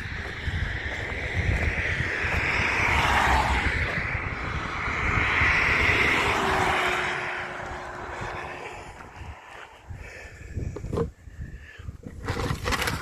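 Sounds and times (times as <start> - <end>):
vehicle passing: 0.0 - 10.3
wind buffeting microphone: 0.0 - 13.0.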